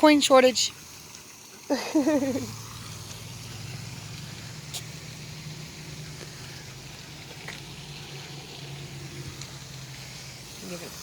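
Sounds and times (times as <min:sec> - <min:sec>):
water feature splashing: 0:00.0 - 0:11.0.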